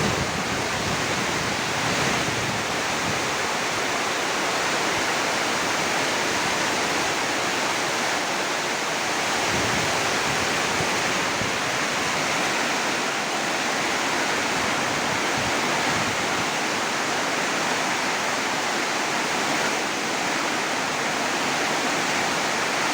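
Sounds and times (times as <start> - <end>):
wind buffeting microphone: 0.0 - 4.0, 9.3 - 12.4
heavy rain pouring: 0.0 - 22.9.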